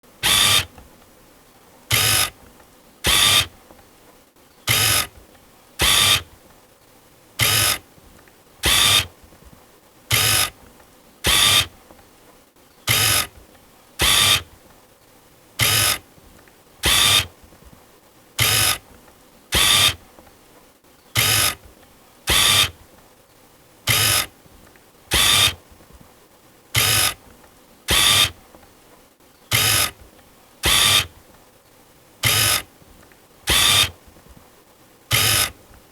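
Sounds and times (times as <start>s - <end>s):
camera autofocus motor: 0.2s - 0.8s, 1.9s - 2.4s, 3.0s - 3.5s, 4.7s - 5.1s, 5.8s - 6.3s, 7.4s - 7.8s, 8.6s - 9.1s, 10.1s - 10.6s, 11.2s - 11.7s, 12.9s - 13.3s, 14.0s - 14.5s, 15.6s - 16.0s, 16.8s - 17.3s, 18.4s - 18.8s, 19.5s - 20.0s, 21.2s - 21.6s, 22.3s - 22.8s, 23.9s - 24.3s, 25.1s - 25.6s, 26.8s - 27.2s, 27.9s - 28.4s, 29.5s - 30.0s, 30.6s - 31.2s, 32.2s - 32.7s, 33.5s - 34.0s, 35.1s - 35.6s.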